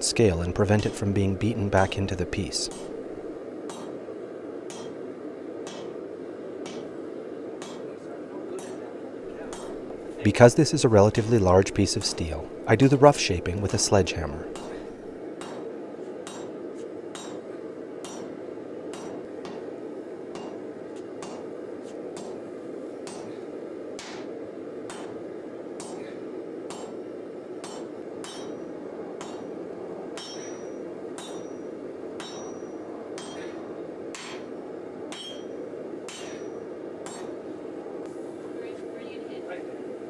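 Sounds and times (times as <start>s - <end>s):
sledgehammer striking steel on anvil: 4.7s - 5.0s, 9.4s - 10.2s, 27.6s - 29.5s, 30.2s - 33.6s, 34.2s - 34.5s, 35.2s - 37.3s.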